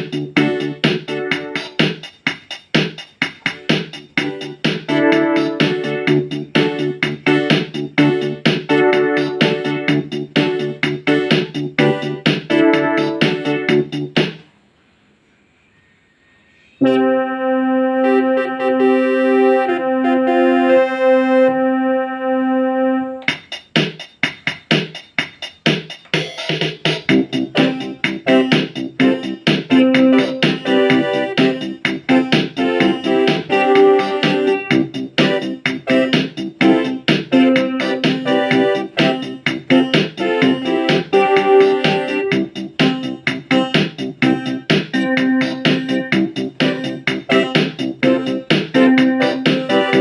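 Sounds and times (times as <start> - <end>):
choppy rhythmic keyboard chords: 0.0 - 14.4, 16.8 - 50.0
synthesizer keyboard sustained chord: 3.6 - 14.2, 16.8 - 23.3, 27.1 - 50.0.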